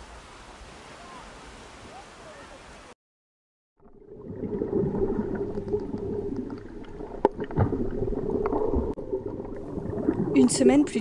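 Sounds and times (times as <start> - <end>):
underwater bubbling and gurgling: 3.8 - 11.0.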